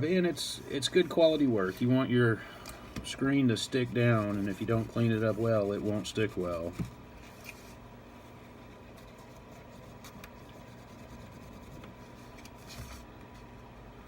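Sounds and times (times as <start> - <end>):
low steady hum: 0.0 - 14.0
tool scraping tablet frame: 3.5 - 7.7.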